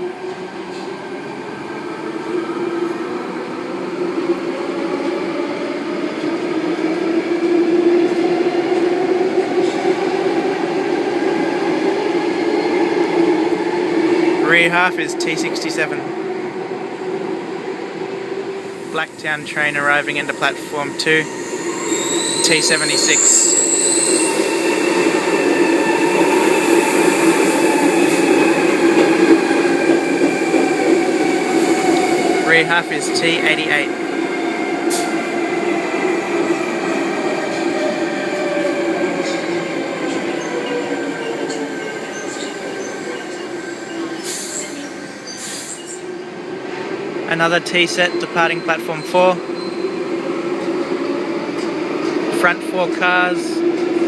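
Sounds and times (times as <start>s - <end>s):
electric train whine: 15.1s - 46.5s.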